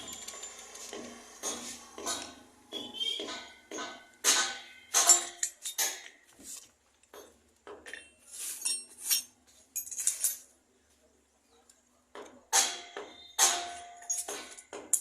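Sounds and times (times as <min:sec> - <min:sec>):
metal tools clinking: 0:00.0 - 0:01.0, 0:04.8 - 0:06.2, 0:07.2 - 0:10.6, 0:13.1 - 0:15.0.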